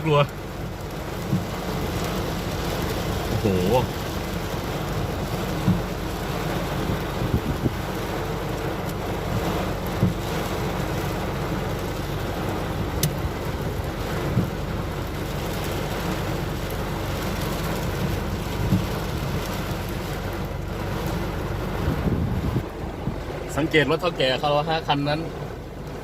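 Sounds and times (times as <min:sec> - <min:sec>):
heavy rain: 0:00.0 - 0:26.0
strong wind: 0:05.2 - 0:10.2, 0:18.0 - 0:23.7.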